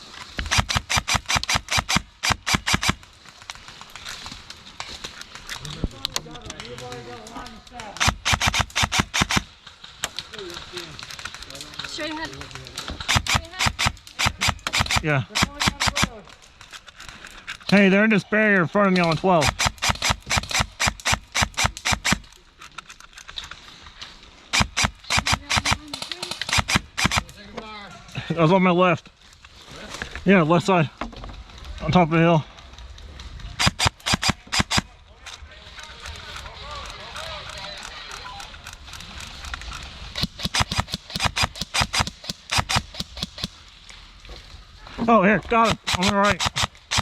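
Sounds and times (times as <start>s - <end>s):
airsoft gun rapid firing: 0.4s - 3.0s, 8.0s - 9.5s, 13.0s - 16.2s, 19.0s - 22.3s, 24.5s - 27.3s, 33.6s - 34.9s, 40.2s - 43.6s, 45.6s - 47.0s.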